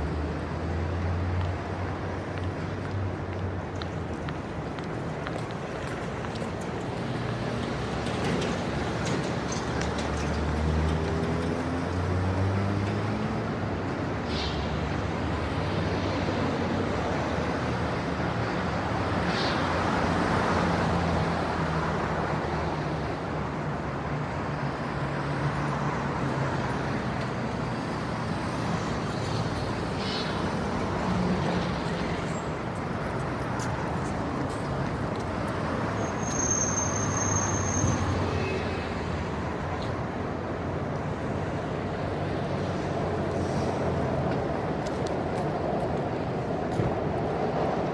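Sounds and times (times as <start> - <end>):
cars passing on street: 0.0 - 47.9
short high squeal: 35.9 - 38.6.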